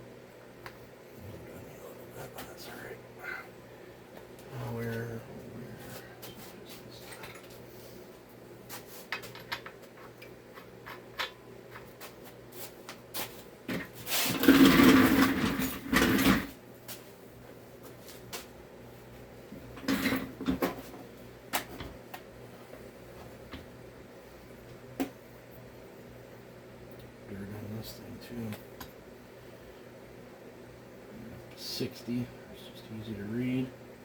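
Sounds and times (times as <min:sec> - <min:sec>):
tools clicking and knocking: 0:09.2 - 0:11.9
tool drawer sliding open and shut: 0:14.2 - 0:16.5.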